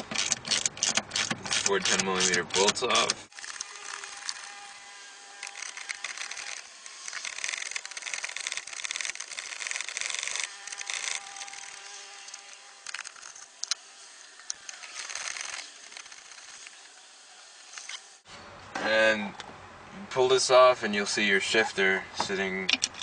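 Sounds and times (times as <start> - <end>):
sharp metallic clicks: 0.0 - 4.4, 22.7 - 23.0
ratchet wrench clicking: 0.1 - 4.4, 5.4 - 13.8.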